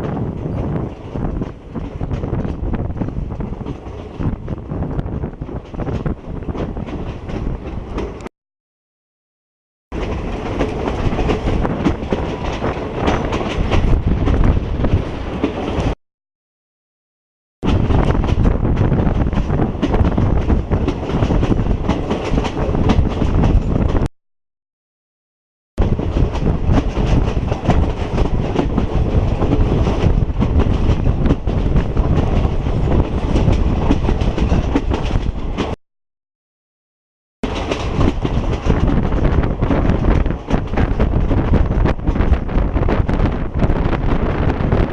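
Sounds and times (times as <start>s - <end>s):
train wheels clattering on rails: 0.0s - 8.3s, 9.9s - 16.0s, 17.7s - 24.1s, 25.8s - 35.8s, 37.4s - 44.9s.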